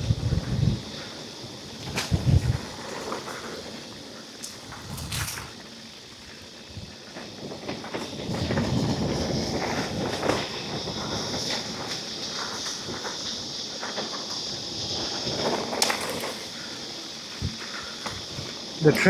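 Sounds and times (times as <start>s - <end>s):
bike tyres running over dirt: 0.0s - 19.0s
bike clicks and rattles: 1.9s - 19.0s
steady high buzz: 8.2s - 19.0s.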